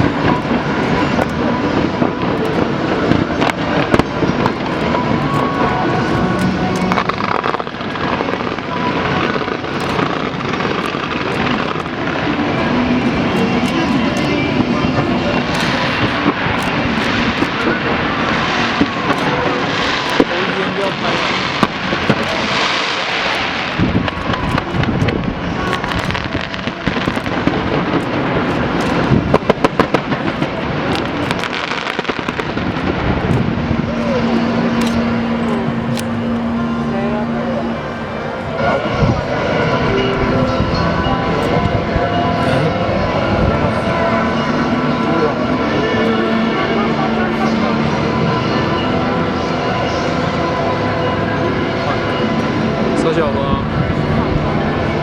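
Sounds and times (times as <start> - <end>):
fireworks bursts and crackles: 0.0 - 36.4.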